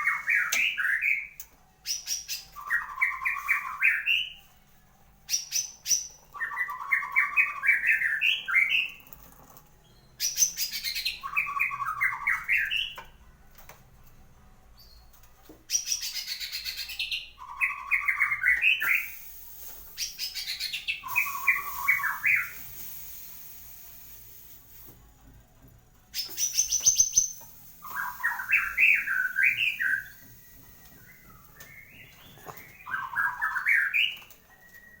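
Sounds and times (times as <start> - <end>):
bird singing trills and warbles: 0.0 - 4.4, 5.3 - 9.1, 9.9 - 13.2, 14.8 - 19.2, 20.0 - 22.6, 26.1 - 35.0.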